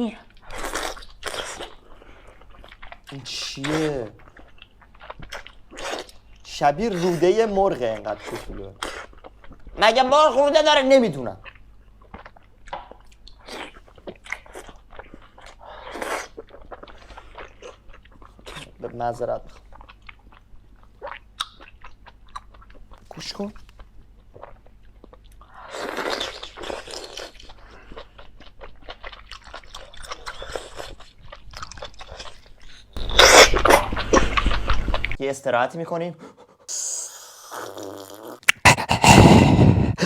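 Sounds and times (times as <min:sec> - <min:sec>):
person biting and chewing food: 0:00.4 - 0:01.9, 0:23.8 - 0:35.2, 0:36.7 - 0:40.0
wet mouth clicks: 0:36.7 - 0:40.0.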